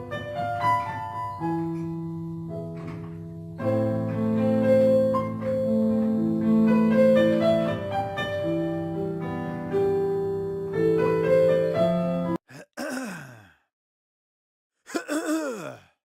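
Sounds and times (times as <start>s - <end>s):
piano music: 0.0s - 12.4s.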